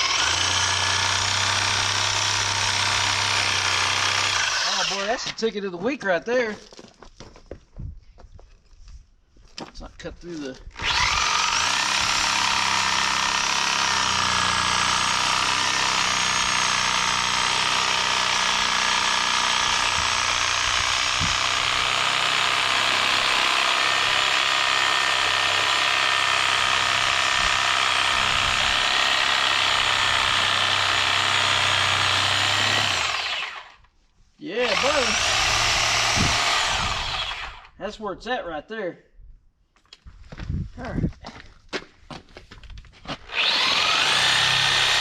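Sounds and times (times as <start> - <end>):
reciprocating saw cutting foam: 0.0 - 5.3, 10.8 - 33.8, 34.6 - 37.8, 43.2 - 45.0.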